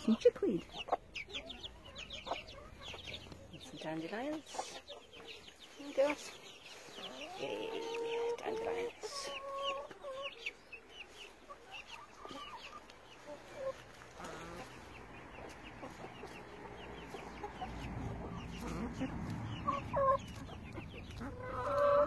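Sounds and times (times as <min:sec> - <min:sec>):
hens clucking: 0:00.0 - 0:22.0.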